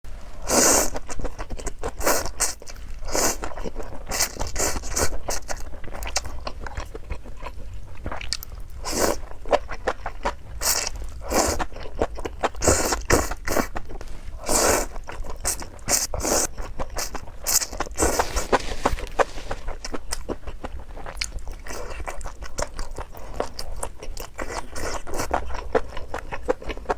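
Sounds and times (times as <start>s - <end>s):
person chewing food: 0.5s - 26.9s.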